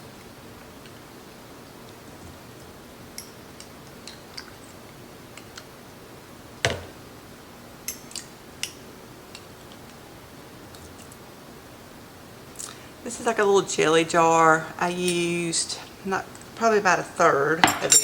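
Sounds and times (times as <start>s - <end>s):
knock: 6.7s - 6.9s.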